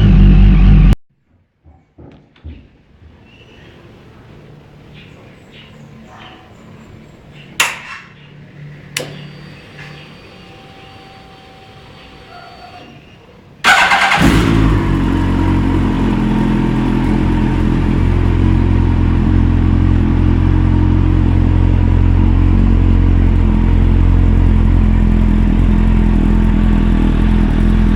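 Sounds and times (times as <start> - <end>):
motorcycle engine starting and idling: 7.6 - 27.9.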